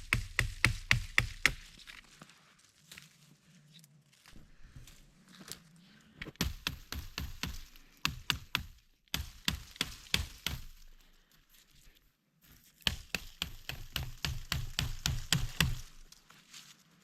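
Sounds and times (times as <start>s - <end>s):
hatchet chopping wood: 0.0s - 1.7s, 6.3s - 10.9s, 12.8s - 16.0s.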